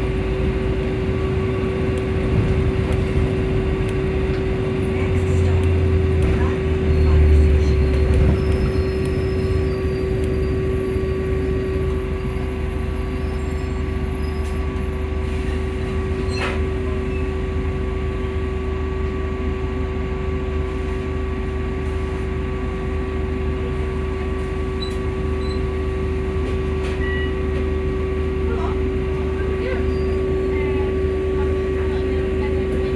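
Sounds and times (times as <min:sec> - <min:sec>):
low drivetrain rumble: 0:00.0 - 0:18.6
bus steady whine: 0:00.0 - 0:32.9.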